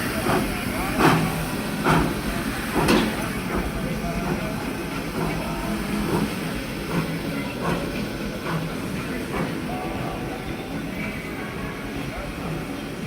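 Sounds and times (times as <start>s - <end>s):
steam locomotive chuffing: 0.0s - 13.0s.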